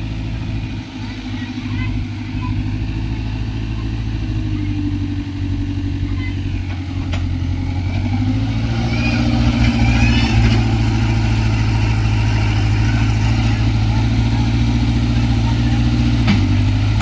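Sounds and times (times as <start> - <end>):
excavator diesel engine running: 0.0 - 17.0
high-pitched squeaks: 8.8 - 13.6.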